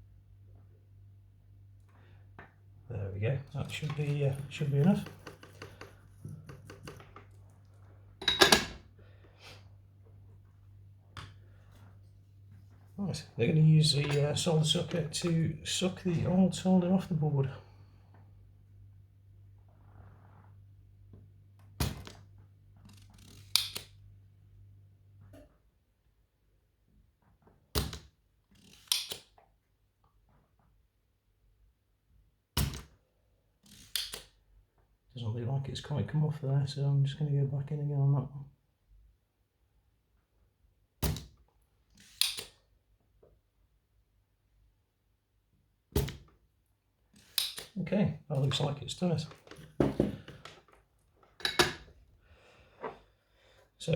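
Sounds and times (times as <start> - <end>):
tools clattering: 3.7 - 7.4, 8.2 - 8.8, 51.3 - 51.9
small clicks and taps: 4.9 - 7.6
desoldering pump snapping: 42.0 - 42.6, 47.2 - 47.8.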